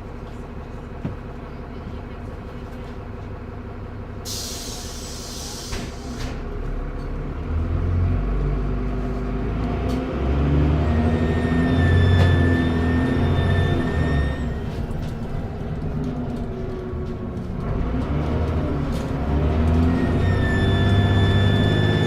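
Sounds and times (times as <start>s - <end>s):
bus diesel engine pulling away: 0.0s - 22.0s
air brake hiss: 4.2s - 6.4s
high turbocharger whistle: 10.8s - 14.6s, 19.9s - 22.0s.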